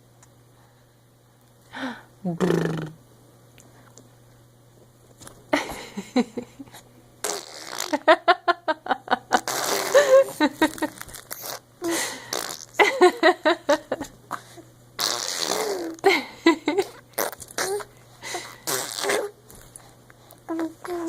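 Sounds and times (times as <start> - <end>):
baby blowing raspberries: 7.2 - 7.9, 9.4 - 12.8, 14.4 - 16.1, 16.8 - 19.4.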